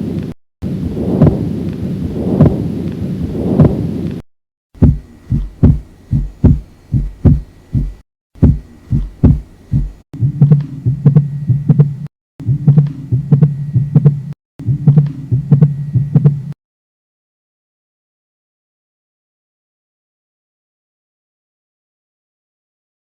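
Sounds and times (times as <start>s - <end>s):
heart murmur hum: 0.0s - 4.2s, 4.8s - 16.6s
heartbeat through stethoscope: 0.0s - 4.2s, 4.8s - 16.6s.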